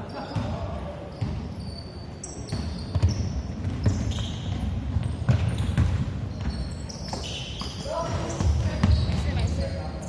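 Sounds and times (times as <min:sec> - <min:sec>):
shoe squeaks: 0:00.0 - 0:10.0
basketball bouncing thuds: 0:02.5 - 0:06.6.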